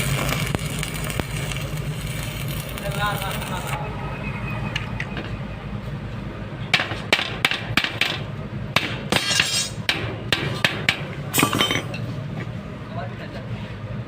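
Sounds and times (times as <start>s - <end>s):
low hum: 0.0s - 8.8s
hammer striking metal: 6.7s - 12.0s.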